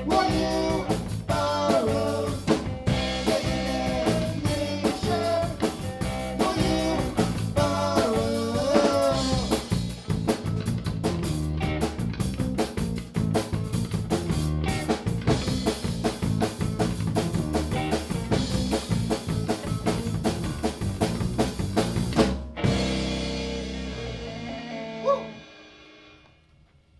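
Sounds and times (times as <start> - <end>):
rock band playing: 0.0 - 26.4.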